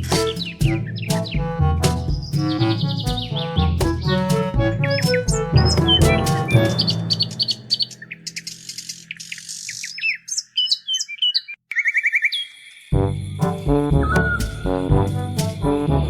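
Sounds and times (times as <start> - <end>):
music: 0.0 - 8.3, 13.0 - 16.0
birds chirping: 2.1 - 12.8.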